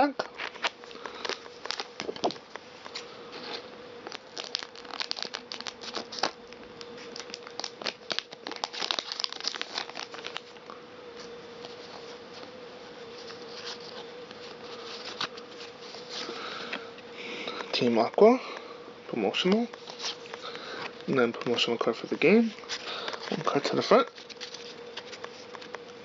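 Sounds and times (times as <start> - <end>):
foil wrapper crinkling and tearing: 0.0 - 10.7, 13.2 - 16.8, 19.6 - 26.0.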